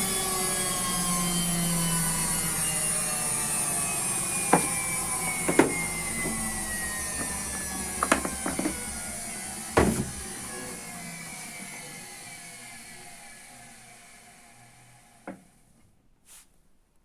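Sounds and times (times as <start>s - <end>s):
washing machine motor whine: 0.0s - 15.7s
sharp knocks: 5.4s - 5.9s, 9.8s - 10.4s.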